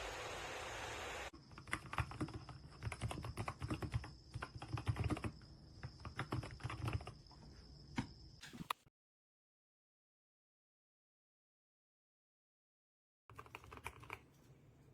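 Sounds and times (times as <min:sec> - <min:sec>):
fast typing on keyboard: 0:01.5 - 0:07.2, 0:13.3 - 0:14.2.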